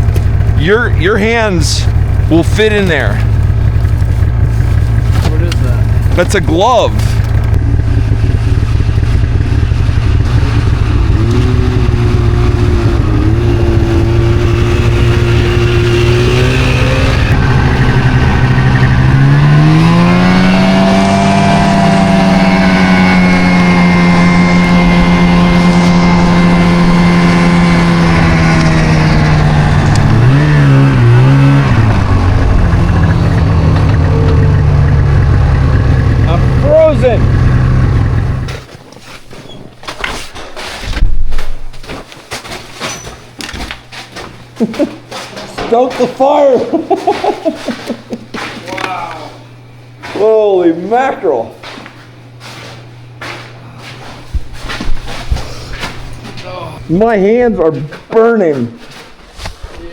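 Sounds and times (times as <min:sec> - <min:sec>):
snowmobile engine running: 0:00.0 - 0:39.2, 0:43.9 - 0:48.9.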